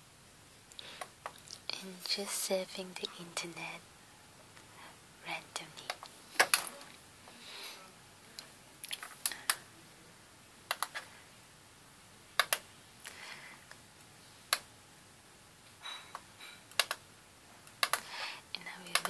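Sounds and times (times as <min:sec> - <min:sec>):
computer keyboard keys clicking: 0:10.7 - 0:11.0, 0:12.4 - 0:12.6, 0:16.1 - 0:17.0, 0:17.7 - 0:19.0.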